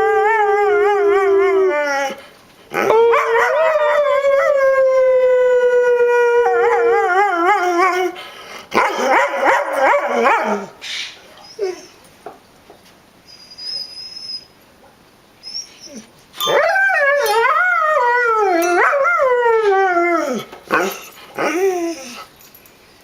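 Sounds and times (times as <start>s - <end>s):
dog howling: 0.0s - 2.2s, 2.8s - 8.1s, 15.9s - 22.2s.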